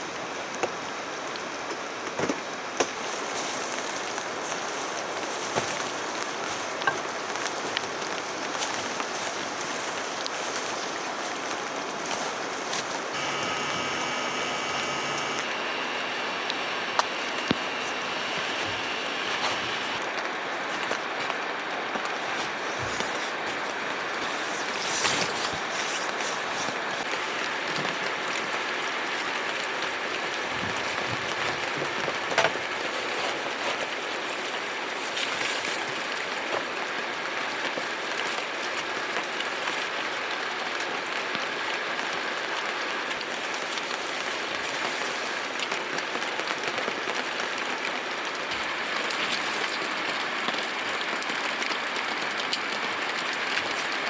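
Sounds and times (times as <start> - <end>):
steady rain falling: 0.0 - 54.0
sharp rain taps: 0.4 - 54.0.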